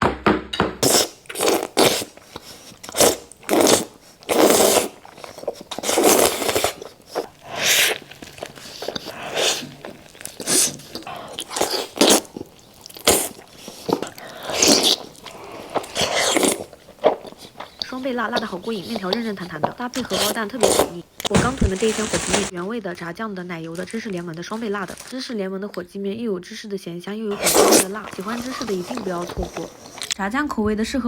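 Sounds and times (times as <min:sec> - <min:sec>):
slurping and chewing noodles: 0:00.8 - 0:22.5, 0:27.3 - 0:30.2.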